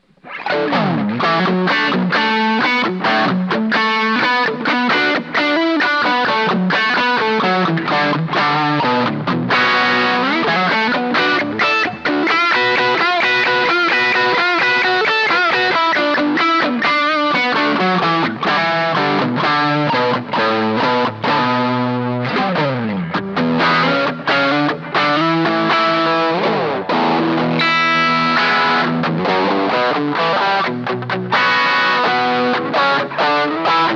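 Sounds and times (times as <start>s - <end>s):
electric guitar through amplifier: 0.0s - 33.9s.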